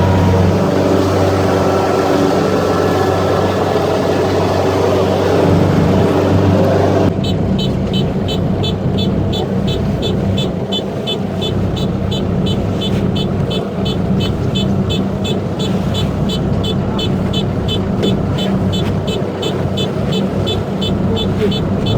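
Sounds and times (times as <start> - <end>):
combine harvester engine hum: 0.0 - 21.9
high regular beeping: 8.0 - 21.9.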